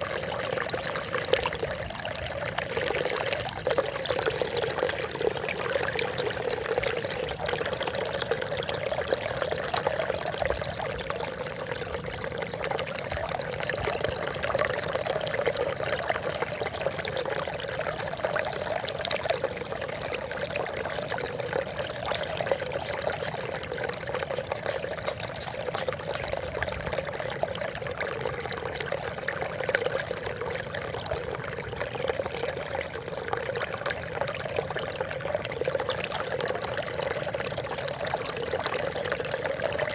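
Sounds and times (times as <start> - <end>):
water trickling and splashing: 0.0 - 39.9.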